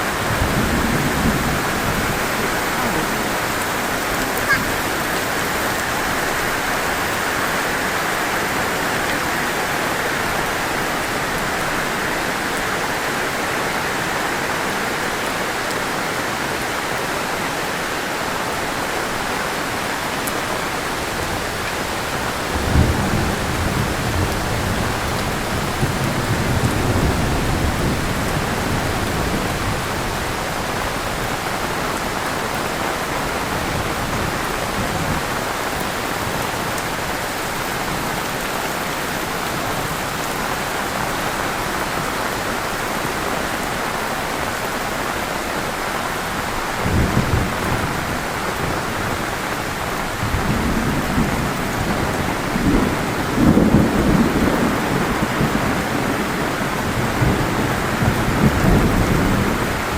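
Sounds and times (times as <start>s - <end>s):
thunder rumbling: 0.0s - 6.7s, 8.6s - 35.3s, 46.5s - 59.9s
heavy rain falling: 0.0s - 59.9s.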